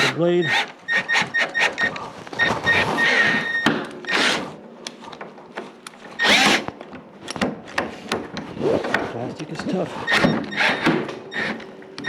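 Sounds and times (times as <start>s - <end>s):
power drill boring into plastic: 6.2s - 6.7s.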